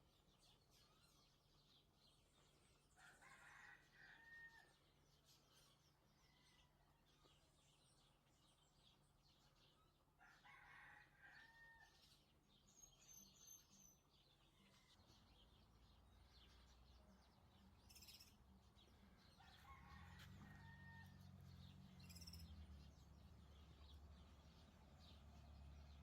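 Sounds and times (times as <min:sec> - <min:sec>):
small birds chirping: 0:00.0 - 0:03.6, 0:11.6 - 0:26.0
faint rooster crowing: 0:02.8 - 0:04.9, 0:05.6 - 0:07.4, 0:10.2 - 0:12.2, 0:17.9 - 0:22.9.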